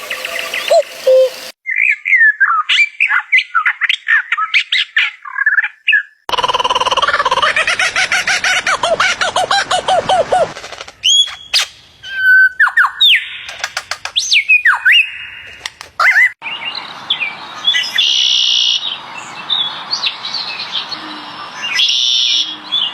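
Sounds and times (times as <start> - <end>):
buzzy bird notes: 0.0 - 1.6
bird whistling: 0.0 - 2.9, 11.0 - 16.4
sharp clicks: 13.4 - 14.4, 15.4 - 16.1.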